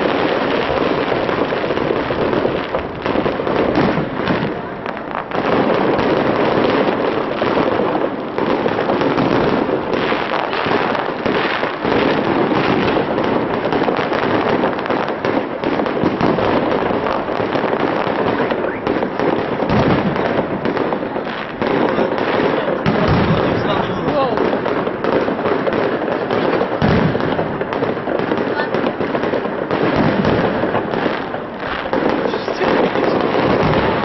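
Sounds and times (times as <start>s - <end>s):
fireworks bangs and crackling: 0.0s - 34.0s.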